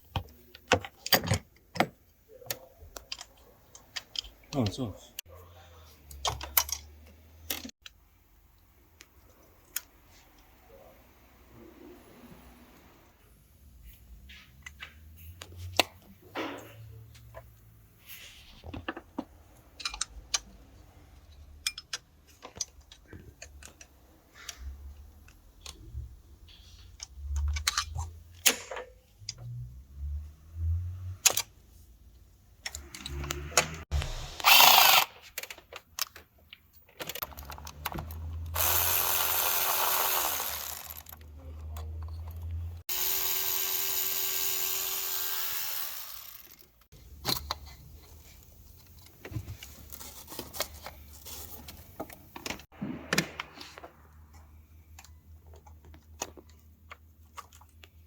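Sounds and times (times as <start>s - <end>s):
power tool whining: 34.0s - 35.1s, 38.5s - 41.2s, 42.8s - 46.8s.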